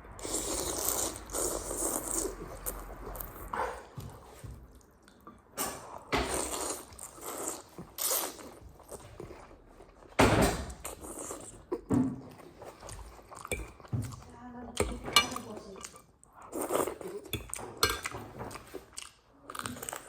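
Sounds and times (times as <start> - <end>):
slurping noodle soup: 0.0 - 4.8, 5.7 - 10.1, 10.7 - 14.2, 15.8 - 17.6.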